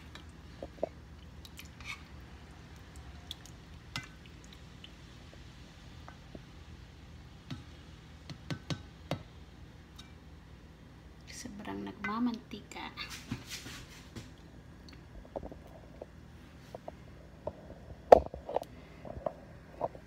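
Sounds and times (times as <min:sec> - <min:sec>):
low steady hum: 0:00.0 - 0:20.0
spoon squishing in sauce: 0:00.1 - 0:05.1.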